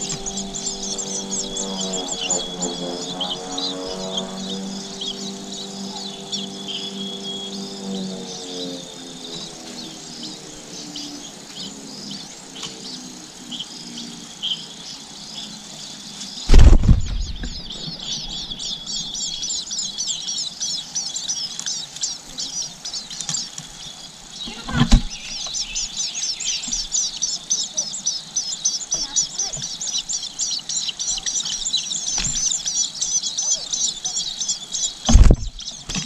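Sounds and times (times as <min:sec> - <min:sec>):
nestling birds chirping: 0:00.0 - 0:36.0
loud thump: 0:16.5 - 0:17.8, 0:35.1 - 0:36.0.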